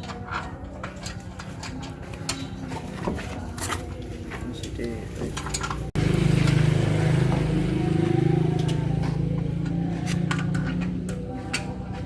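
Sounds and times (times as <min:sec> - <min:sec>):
car engine running: 0:05.2 - 0:11.4.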